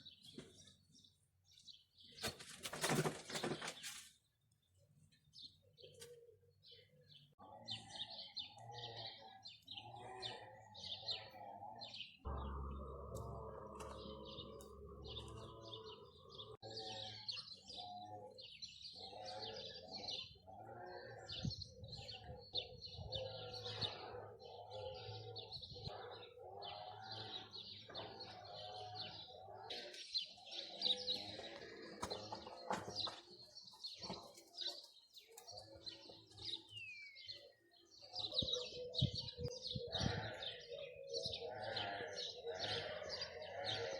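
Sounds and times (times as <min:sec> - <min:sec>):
birds chirping: 0:00.0 - 0:43.9.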